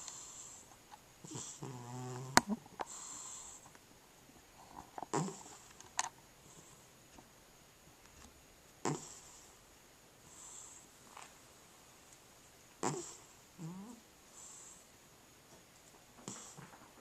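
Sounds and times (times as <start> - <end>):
cat snoring: 0.0 - 3.6, 5.1 - 5.7, 8.8 - 9.6, 10.3 - 10.9, 12.8 - 14.9, 16.2 - 16.7.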